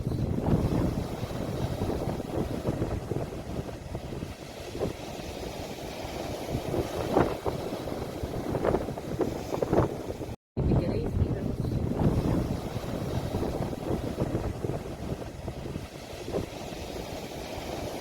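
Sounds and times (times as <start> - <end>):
sea waves: 0.0 - 18.0
wind buffeting microphone: 0.0 - 18.0.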